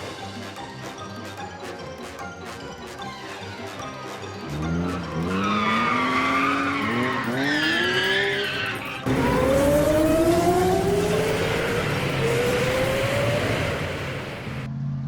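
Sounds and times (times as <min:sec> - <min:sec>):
loud engine climbing in pitch: 0:04.3 - 0:15.0
cartoon toy engines revving: 0:04.4 - 0:14.7.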